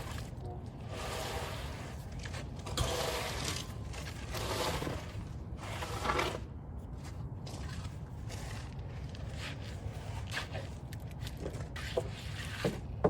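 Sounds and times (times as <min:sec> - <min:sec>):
screed board scraping wet concrete: 0:00.0 - 0:06.5, 0:11.4 - 0:13.0.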